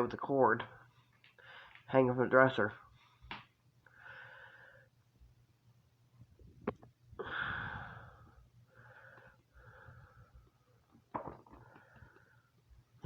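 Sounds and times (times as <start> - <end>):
person breathing into microphone: 7.2 - 10.5.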